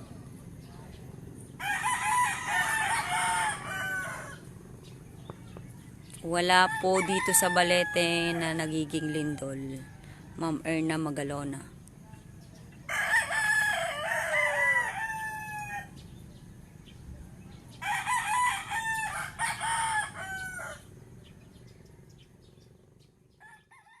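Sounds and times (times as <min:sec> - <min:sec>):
rooster crowing: 0:01.6 - 0:04.5, 0:06.4 - 0:10.4, 0:12.9 - 0:16.0, 0:17.8 - 0:20.9, 0:23.4 - 0:24.0.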